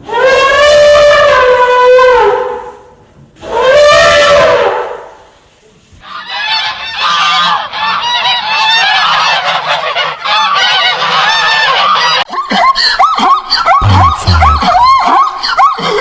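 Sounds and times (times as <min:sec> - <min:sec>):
waterfowl honking and calling: 0:06.0 - 0:12.2.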